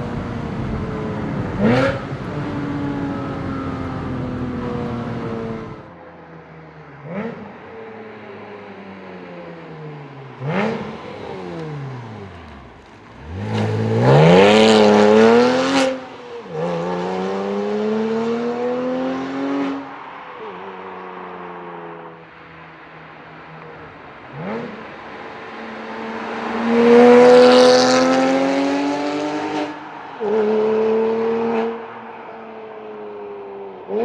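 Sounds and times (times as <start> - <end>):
sports car engine revving: 0.0 - 5.9, 10.3 - 19.8, 23.5 - 31.8.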